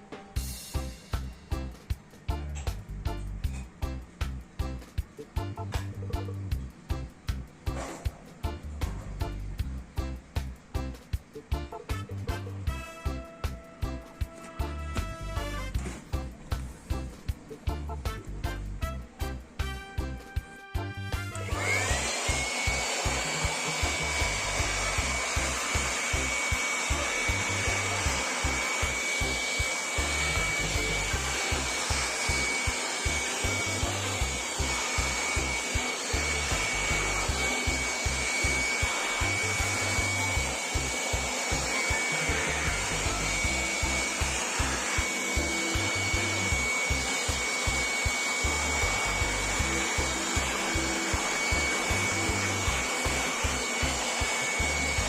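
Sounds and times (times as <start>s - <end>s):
small electric motor whining: 21.3s - 55.0s.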